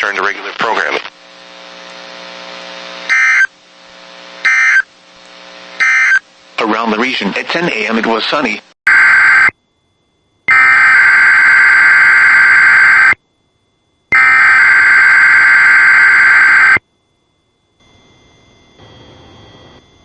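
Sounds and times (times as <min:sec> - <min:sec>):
buzzing data bursts: 0:08.9 - 0:09.5, 0:10.5 - 0:13.2, 0:14.2 - 0:16.8.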